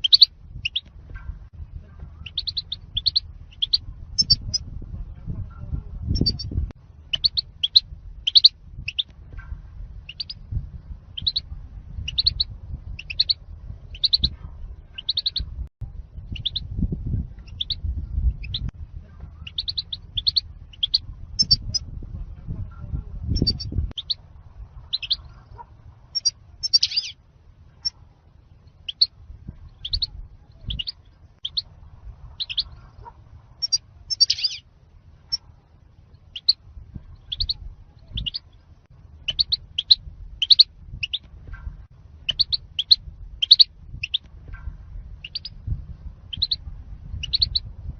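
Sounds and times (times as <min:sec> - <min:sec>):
goldfinch chirping: 0:00.0 - 0:00.9, 0:02.2 - 0:04.6, 0:07.1 - 0:09.1, 0:10.1 - 0:10.4, 0:11.2 - 0:11.4, 0:12.0 - 0:14.3, 0:15.0 - 0:15.4, 0:16.4 - 0:16.6, 0:17.4 - 0:18.7, 0:19.4 - 0:21.8, 0:23.4 - 0:24.2, 0:24.9 - 0:25.4, 0:26.2 - 0:27.2, 0:28.9 - 0:29.1, 0:29.8 - 0:31.7, 0:32.4 - 0:32.9, 0:33.6 - 0:34.6, 0:36.3 - 0:36.6, 0:37.2 - 0:38.5, 0:39.2 - 0:41.3, 0:42.3 - 0:44.2, 0:45.2 - 0:45.6, 0:46.3 - 0:46.6, 0:47.2 - 0:47.7
low rumble: 0:00.0 - 0:47.9.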